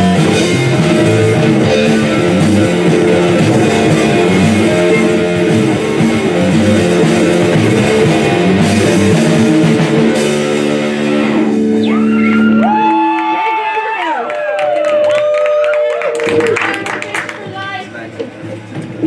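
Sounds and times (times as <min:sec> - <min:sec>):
held guitar chord ringing: 0:00.0 - 0:12.5
sliding higher guitar tones: 0:00.0 - 0:13.4
rock band playing: 0:00.0 - 0:14.0.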